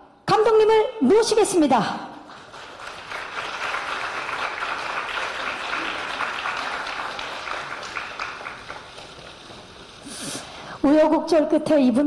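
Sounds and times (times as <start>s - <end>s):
audience applauding: 2.3s - 10.1s.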